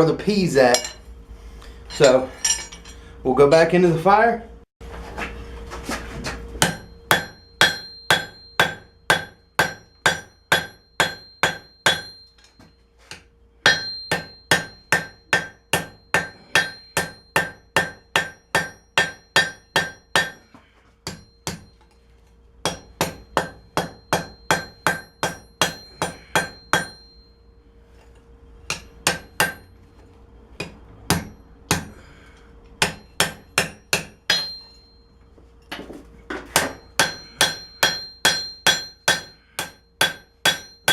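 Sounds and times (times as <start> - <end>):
steady hum: 0.0 - 40.9
hammer ringing on anvil: 0.6 - 1.0, 1.9 - 3.0, 6.6 - 12.8, 13.6 - 21.9, 22.6 - 27.6, 28.7 - 29.8, 30.6 - 32.1, 32.8 - 35.2, 36.5 - 40.9.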